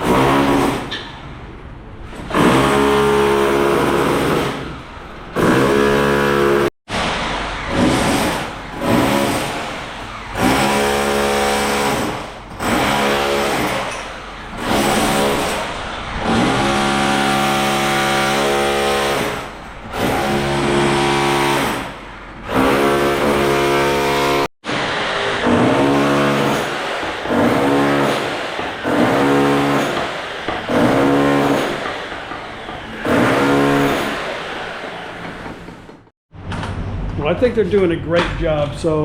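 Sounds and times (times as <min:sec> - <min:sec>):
power tool motor bursts: 0:22.5 - 0:35.2.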